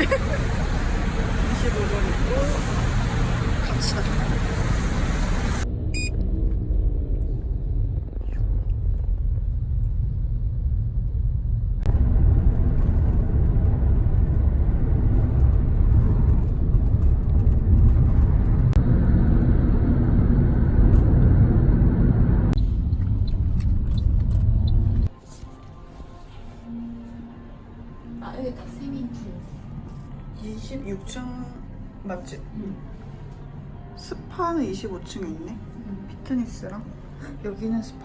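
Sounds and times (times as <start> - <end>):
steady low rumble: 0.0 - 25.2.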